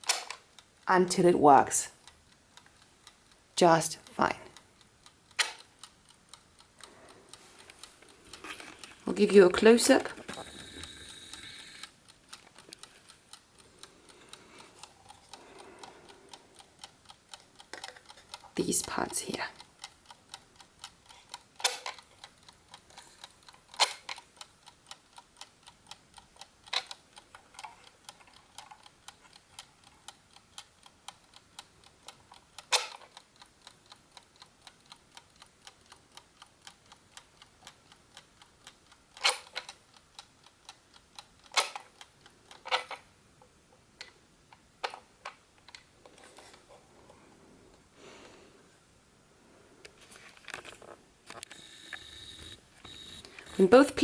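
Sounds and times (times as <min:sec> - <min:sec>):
clock lever clicks: 0:00.0 - 0:00.5, 0:05.3 - 0:05.7, 0:21.6 - 0:22.1, 0:23.2 - 0:24.3, 0:32.6 - 0:33.2, 0:39.2 - 0:39.8, 0:41.4 - 0:43.0
chess clock ticking rapidly: 0:00.0 - 0:42.8, 0:51.6 - 0:54.0.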